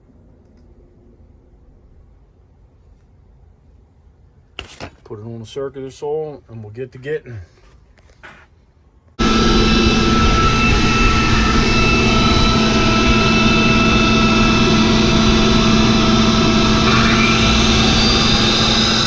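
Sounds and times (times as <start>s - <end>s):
circular saw cutting concrete: 9.2s - 19.0s.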